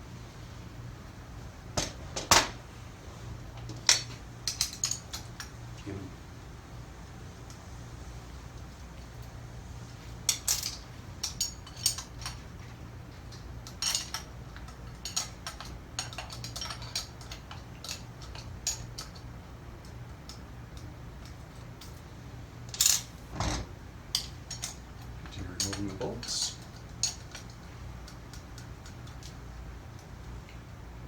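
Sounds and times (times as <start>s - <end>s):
steady low hum: 0.0s - 31.0s
metal tools clinking: 10.3s - 12.5s, 13.6s - 19.2s, 24.1s - 27.6s.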